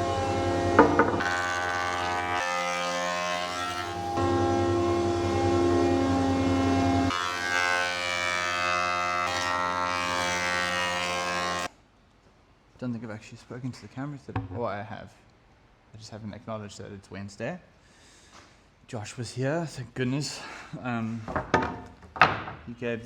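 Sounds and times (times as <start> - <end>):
sustained chord-like music: 0.0 - 1.5, 3.8 - 7.6.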